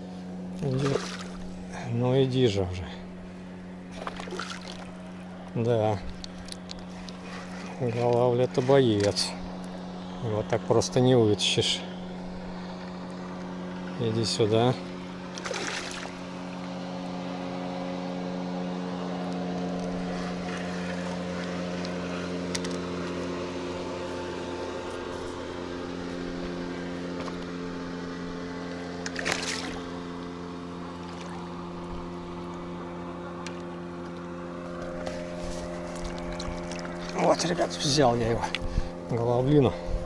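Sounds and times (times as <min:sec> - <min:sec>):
motorboat engine droning: 0:00.0 - 0:40.0
splashing water: 0:00.6 - 0:01.5, 0:03.9 - 0:05.2, 0:15.3 - 0:16.7, 0:29.0 - 0:30.0, 0:35.6 - 0:37.8.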